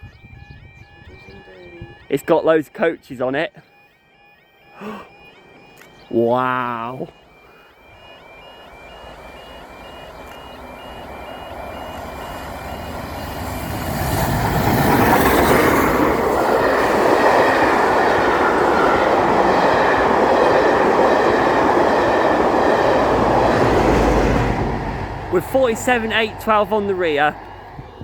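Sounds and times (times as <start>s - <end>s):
steam train passing: 7.1s - 28.0s.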